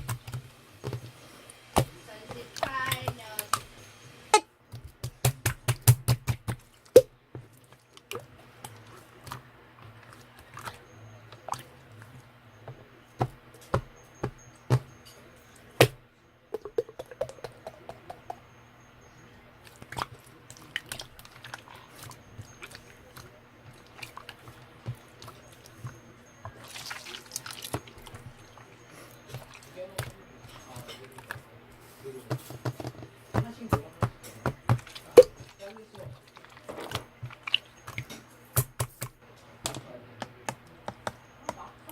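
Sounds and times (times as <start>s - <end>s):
sharp clicks and taps: 16.6s - 18.4s.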